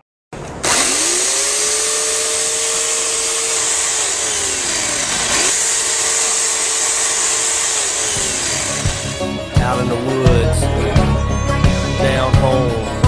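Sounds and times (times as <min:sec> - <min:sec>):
electric chainsaw motor whine: 0:00.6 - 0:09.3.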